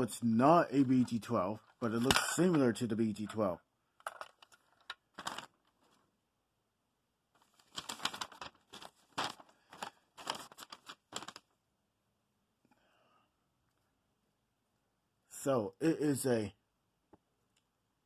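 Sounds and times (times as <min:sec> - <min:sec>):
crinkling and rustling: 0:00.7 - 0:06.1, 0:07.4 - 0:11.6.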